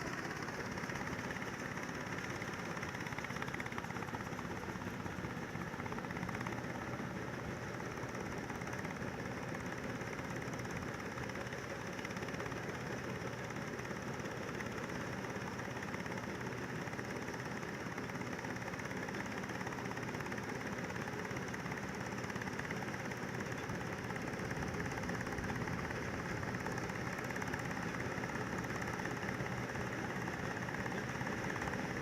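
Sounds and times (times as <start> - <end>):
combine harvester engine drone: 0.0 - 32.0.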